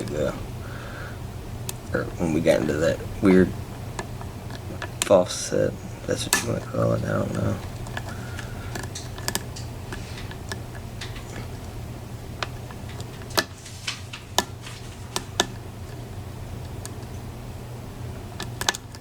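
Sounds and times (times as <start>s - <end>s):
low steady hum: 0.0s - 19.0s
lock picks clicking on metal: 18.4s - 19.0s.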